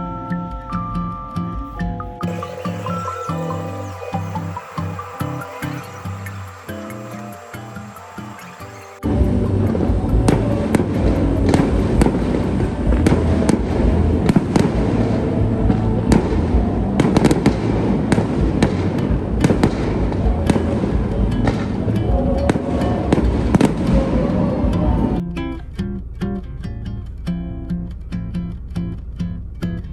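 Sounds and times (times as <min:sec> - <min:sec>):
low rumble: 0:09.0 - 0:27.0.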